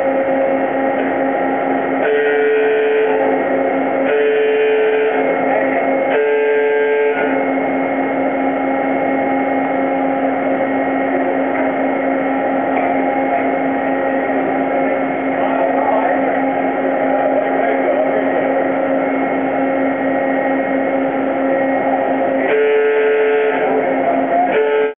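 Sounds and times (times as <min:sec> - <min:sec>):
buzzing warning alarm: 0:00.0 - 0:25.0
tunnel boring machine hum: 0:00.0 - 0:25.0.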